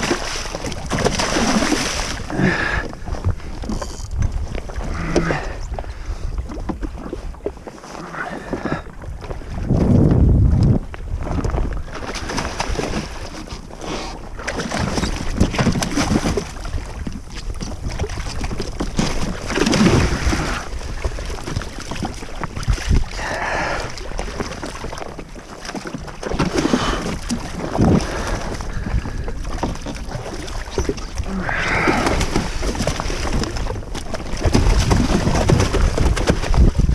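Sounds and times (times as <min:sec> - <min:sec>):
wind buffeting microphone: 0:00.0 - 0:25.3, 0:26.2 - 0:36.9
water splashing: 0:00.0 - 0:36.9.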